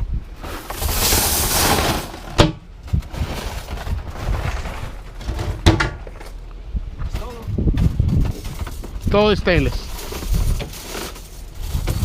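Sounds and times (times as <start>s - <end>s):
metal scrap rushing and scraping: 0.4s - 2.5s.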